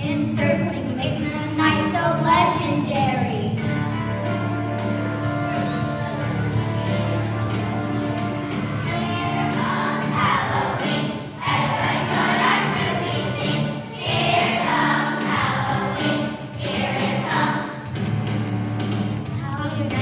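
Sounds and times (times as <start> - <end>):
instrumental accompaniment: 3.0 - 19.4
children's choir singing: 4.2 - 18.1.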